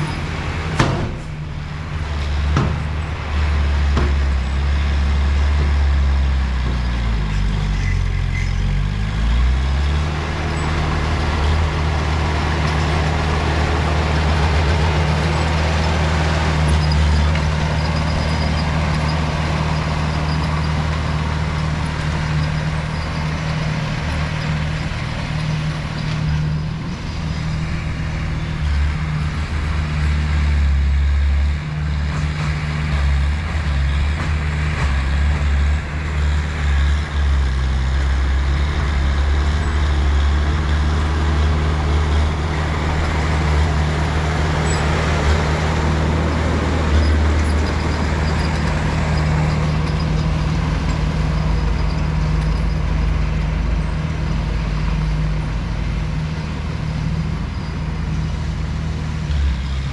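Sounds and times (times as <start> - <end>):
heavy diesel engine under load: 0.0 - 59.9.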